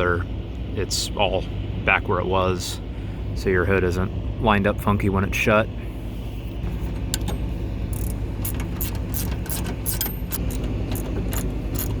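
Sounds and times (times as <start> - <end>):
steady low hum: 0.0 - 12.0
ratchet wrench clicking: 7.9 - 12.0.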